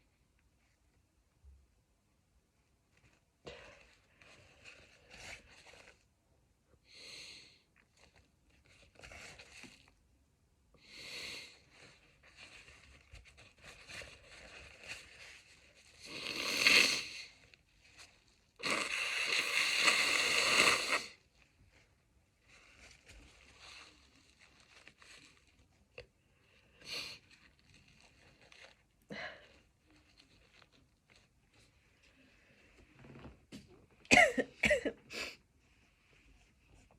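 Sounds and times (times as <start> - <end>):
person sniffing: 16.0 - 17.3, 18.6 - 21.2
person blowing nose: 16.0 - 17.4, 18.6 - 21.2, 26.8 - 27.3.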